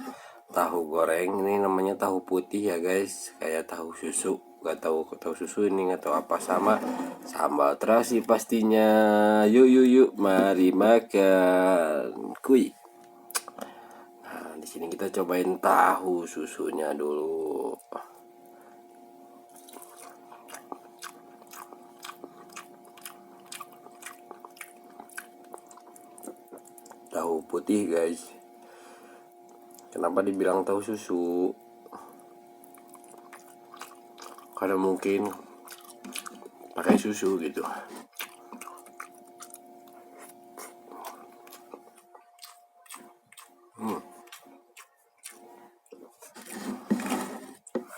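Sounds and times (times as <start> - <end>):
faint steady hum: 0.0 - 47.9
wet chewing mouth clicks: 13.3 - 13.7, 19.5 - 27.1, 31.9 - 34.6, 35.2 - 36.8, 38.1 - 46.4.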